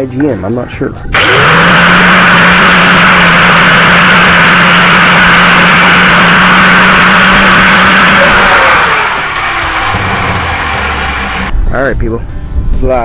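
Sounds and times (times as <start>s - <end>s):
motor hum: 1.0s - 11.5s
electric grinder grinding metal: 1.1s - 11.5s.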